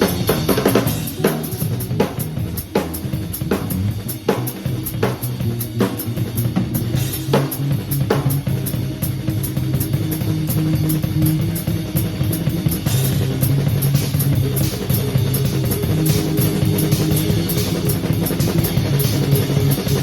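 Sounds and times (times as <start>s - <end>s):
bass guitar notes: 0.0s - 20.0s.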